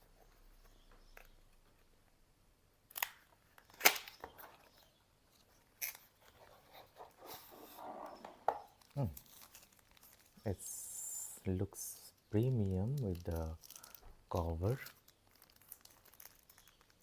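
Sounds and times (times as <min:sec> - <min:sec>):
cardboard and plastic snapping: 0:02.9 - 0:04.6.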